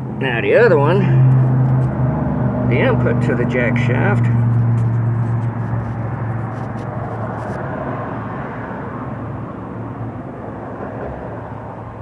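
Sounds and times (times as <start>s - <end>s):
outdoor background noise: 0.0s - 12.0s
low mechanical hum: 1.3s - 7.6s.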